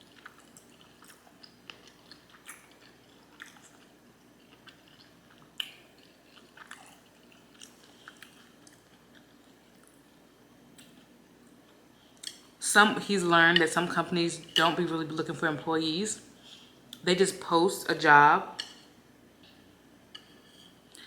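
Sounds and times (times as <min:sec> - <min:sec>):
person chewing: 0:00.0 - 0:10.0.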